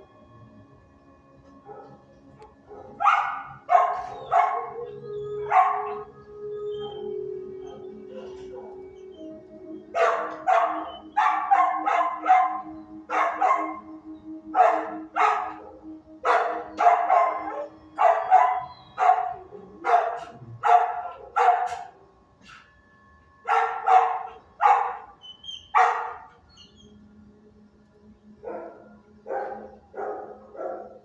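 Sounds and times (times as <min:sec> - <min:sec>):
dog barking: 0:01.7 - 0:02.0, 0:02.7 - 0:06.2, 0:07.7 - 0:08.9, 0:10.0 - 0:13.9, 0:14.5 - 0:15.7, 0:16.3 - 0:22.7, 0:23.5 - 0:26.4, 0:28.4 - 0:31.0.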